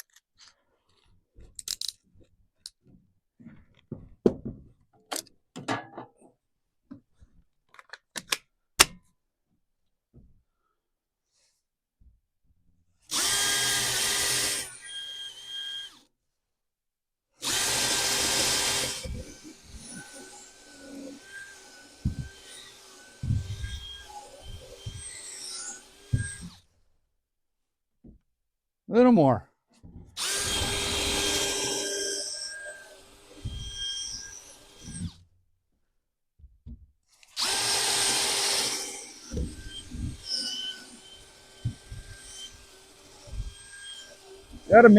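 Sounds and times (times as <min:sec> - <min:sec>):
power drill boring into wood: 0:13.1 - 0:16.0, 0:17.4 - 0:26.6, 0:30.2 - 0:35.2, 0:37.1 - 0:44.9.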